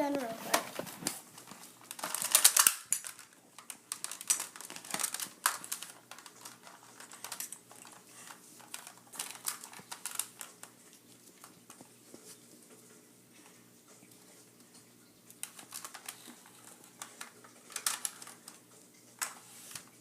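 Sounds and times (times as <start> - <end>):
toy blaster clicking and rattling: 1.9 - 7.6, 17.0 - 18.6.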